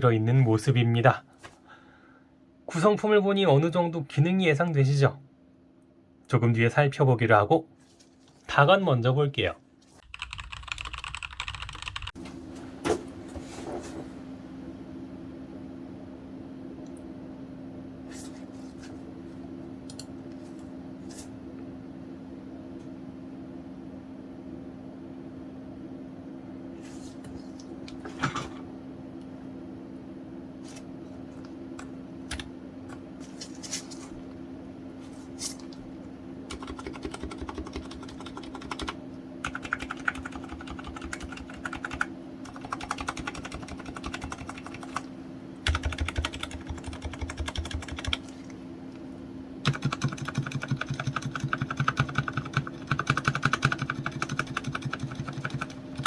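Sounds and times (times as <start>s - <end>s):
steady low hum: 0.0s - 56.0s
quiet keyboard typing: 10.0s - 12.2s, 19.8s - 20.2s, 31.8s - 32.5s, 36.5s - 48.6s, 49.6s - 56.0s.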